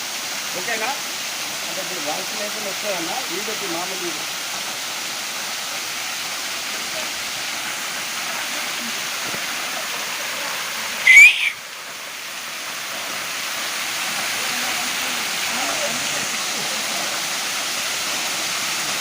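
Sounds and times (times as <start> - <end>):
waterfall rushing: 0.0 - 19.0
high-pitched squeal: 11.1 - 11.6.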